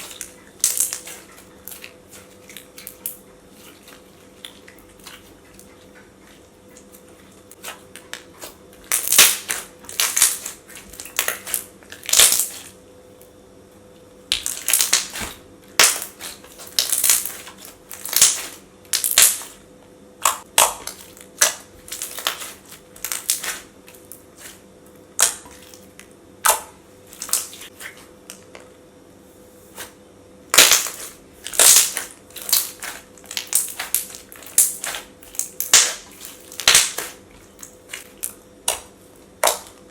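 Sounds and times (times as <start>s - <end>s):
slime squishing and popping: 7.6s - 12.7s, 14.3s - 19.6s, 20.2s - 24.6s, 25.2s - 25.8s, 30.5s - 39.8s.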